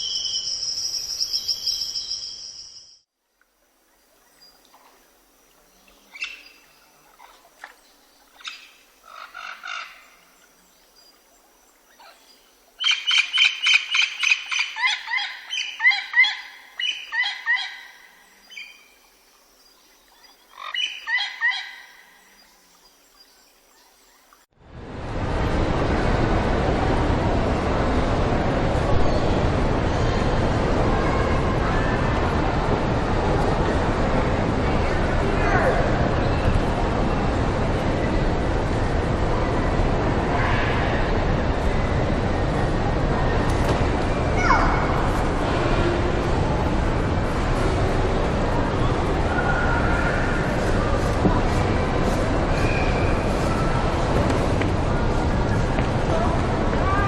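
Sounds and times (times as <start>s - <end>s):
loud rushing noise: 24.6s - 57.0s.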